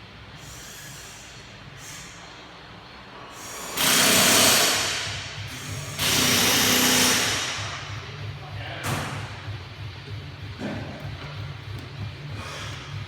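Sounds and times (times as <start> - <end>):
power tool running: 3.8 - 7.6.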